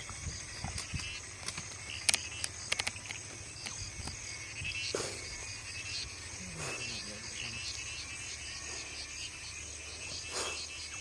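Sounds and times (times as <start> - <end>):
insects chirring: 0.0 - 11.0
sharp clicks: 0.7 - 4.2.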